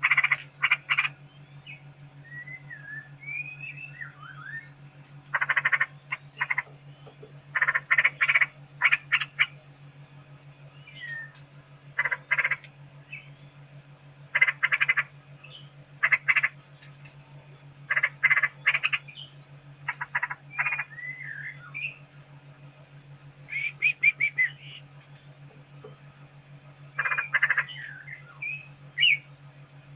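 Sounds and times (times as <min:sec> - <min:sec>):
bird calling rapid notes: 0:00.0 - 0:06.8, 0:07.5 - 0:09.6, 0:10.8 - 0:13.3, 0:14.3 - 0:16.6, 0:17.9 - 0:22.0, 0:23.4 - 0:25.0, 0:26.9 - 0:29.3
steady low hum: 0:00.0 - 0:29.9
gliding whistled bird notes: 0:01.4 - 0:04.8, 0:20.6 - 0:22.0, 0:23.5 - 0:24.9.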